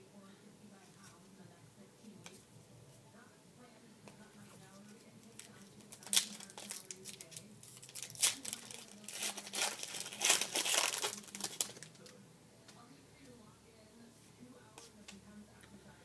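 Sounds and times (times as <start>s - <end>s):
foil wrapper tearing and crinkling: 5.4s - 12.1s.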